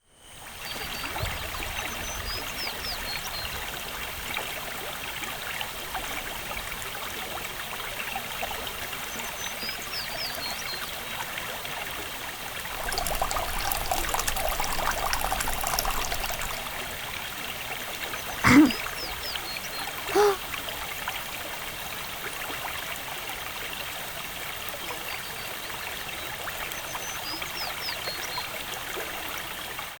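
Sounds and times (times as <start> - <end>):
water trickling: 12.6 - 21.1
water splashing: 12.7 - 17.0.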